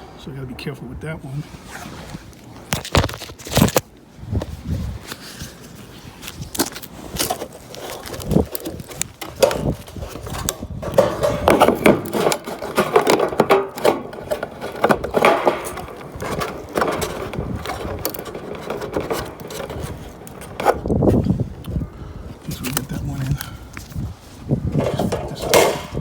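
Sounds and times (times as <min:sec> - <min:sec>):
metal gutter guard scraping and rattling: 0:06.9 - 0:21.8, 0:24.3 - 0:26.0.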